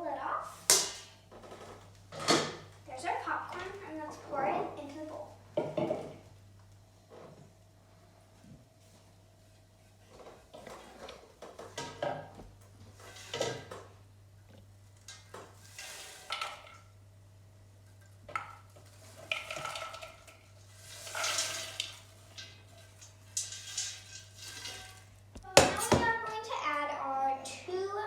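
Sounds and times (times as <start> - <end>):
pot and utensil clanking on bowl: 17.9 - 26.1
popcorn rustling: 17.9 - 26.2.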